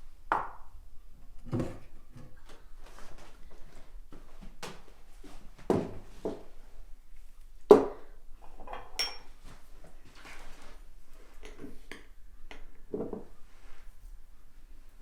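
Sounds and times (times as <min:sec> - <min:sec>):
dishes and pots clattering: 0:08.4 - 0:09.4.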